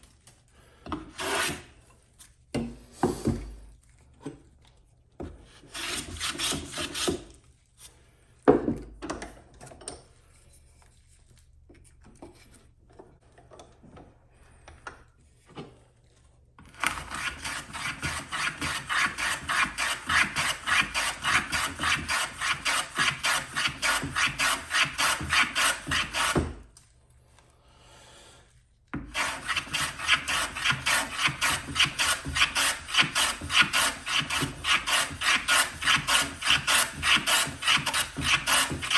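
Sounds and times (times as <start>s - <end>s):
rhythmic rasping strokes on wood: 17.1s - 26.4s, 29.1s - 38.9s.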